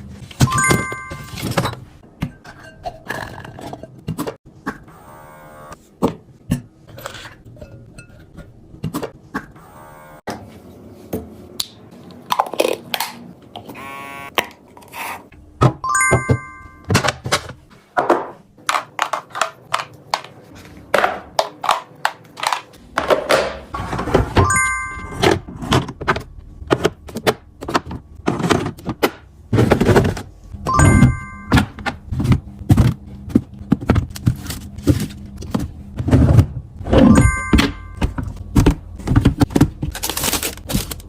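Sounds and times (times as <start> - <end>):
containers knocking and clunking: 15.6 - 40.0.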